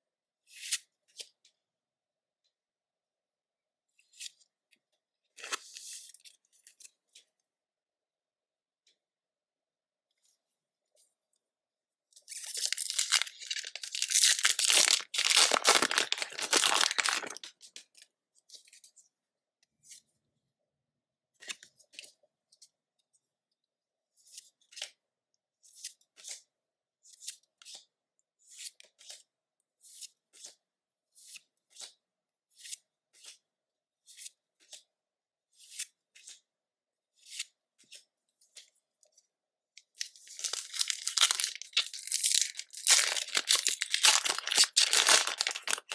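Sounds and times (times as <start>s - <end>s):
foil wrapper crinkling: 12.5s - 17.6s, 40.0s - 45.9s.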